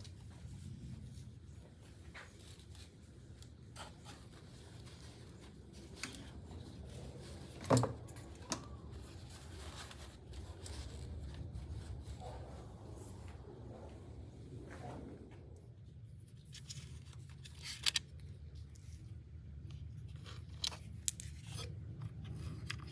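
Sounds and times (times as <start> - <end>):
tools and parts being handled: 2.0 - 11.7, 16.3 - 22.9.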